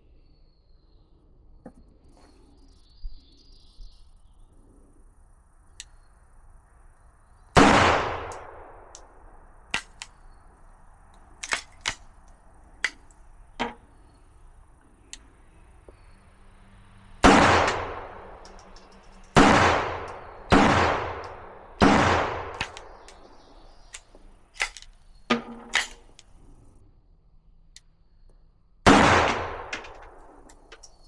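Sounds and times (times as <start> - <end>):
pistol shot with echo: 7.6 - 8.9, 17.2 - 18.4, 19.4 - 24.8, 28.9 - 30.4.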